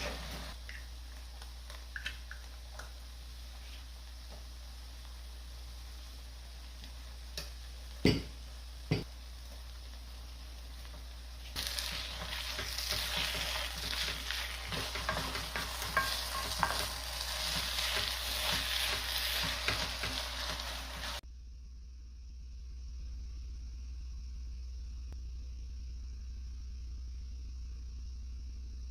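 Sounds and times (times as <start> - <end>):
spatula scraping a pan: 0.0 - 0.6, 11.6 - 21.2
rice sizzling in a frying pan: 0.0 - 21.2.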